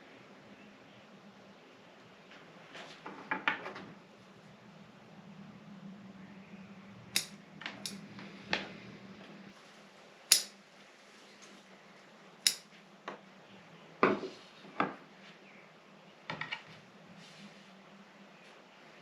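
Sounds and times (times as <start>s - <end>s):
pruning shears snipping: 7.2s - 8.0s, 10.3s - 10.6s, 12.5s - 12.7s.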